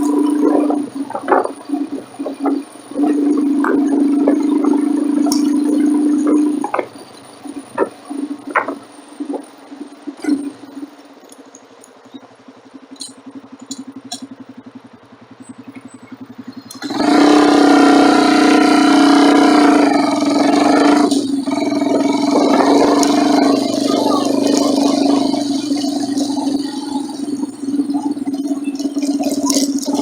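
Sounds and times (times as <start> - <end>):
motorcycle engine: 0.0 - 30.0
sharp clicks: 5.2 - 14.6, 15.5 - 17.1.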